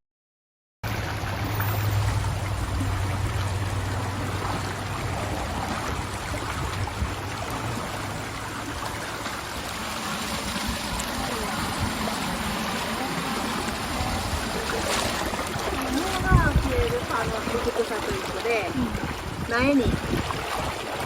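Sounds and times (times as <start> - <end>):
water rushing: 0.8 - 21.0
low hum: 0.9 - 17.0.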